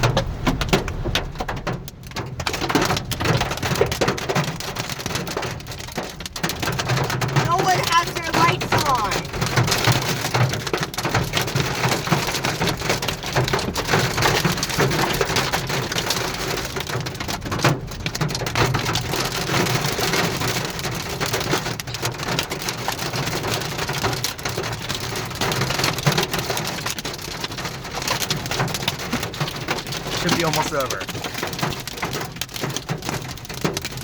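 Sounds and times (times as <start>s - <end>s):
rain and hail on car roof: 0.0s - 34.0s.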